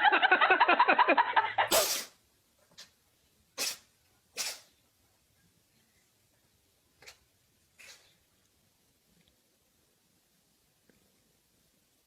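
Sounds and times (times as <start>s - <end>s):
pet sneezing: 1.6s - 2.2s, 3.6s - 4.8s, 7.8s - 8.2s.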